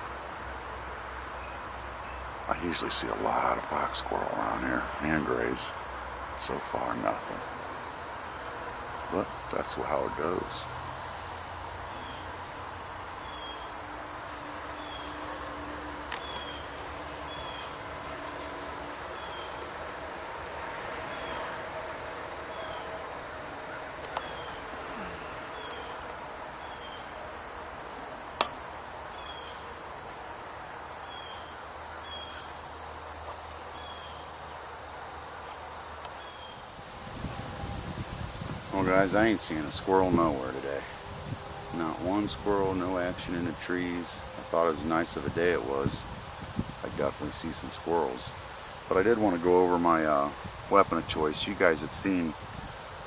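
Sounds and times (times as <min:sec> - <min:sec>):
crickets and insects chorus: 0:00.0 - 0:53.0
sharp click: 0:28.4 - 0:28.6.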